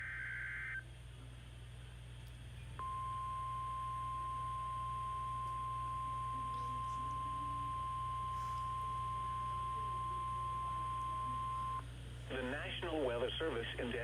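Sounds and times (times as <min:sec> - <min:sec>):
low steady hum: 0:00.0 - 0:14.0
steady warning tone: 0:02.8 - 0:14.0.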